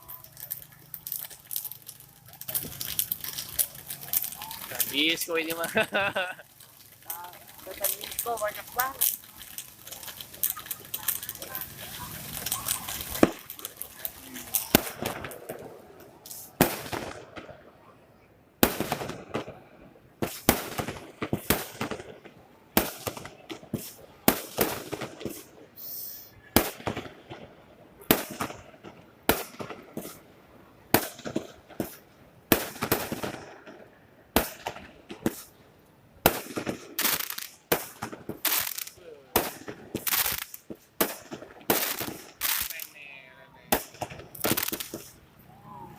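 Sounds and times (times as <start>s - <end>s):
fireworks banging: 0.0s - 17.7s, 18.6s - 19.6s, 20.2s - 35.6s, 36.2s - 45.2s
fireworks crackling: 0.0s - 17.7s, 18.6s - 45.9s.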